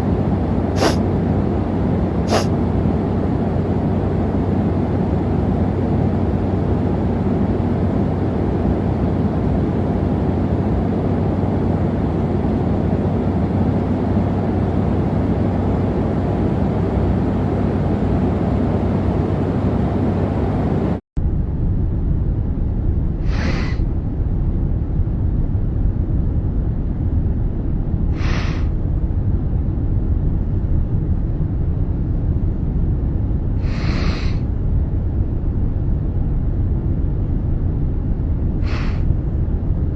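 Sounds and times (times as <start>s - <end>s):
airliner cabin rumble: 0.0s - 39.9s
man sniffling: 0.8s - 1.0s, 2.3s - 2.5s, 33.6s - 34.4s, 38.6s - 39.0s.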